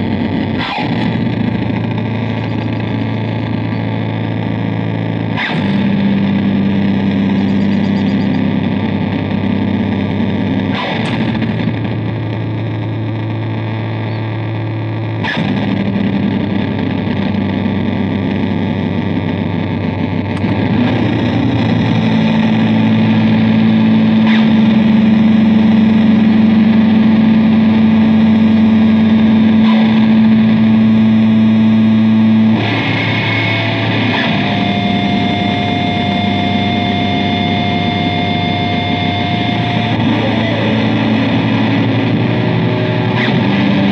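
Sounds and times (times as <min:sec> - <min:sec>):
distorted electric bass drone: 0:00.0 - 0:43.9
higher held tone: 0:00.8 - 0:09.0.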